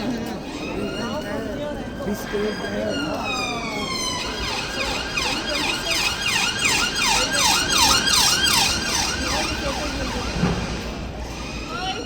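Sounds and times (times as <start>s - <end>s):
emergency siren yelping: 3.1s - 10.9s.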